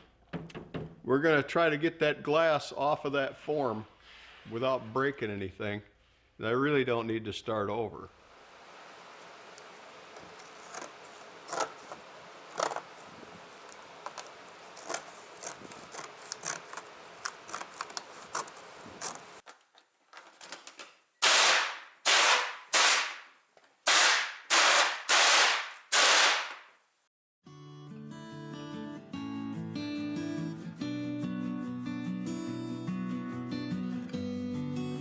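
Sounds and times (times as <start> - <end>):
fiberglass cracking and crinkling: 12.5 - 21.7
loud hissing bursts: 23.9 - 26.6.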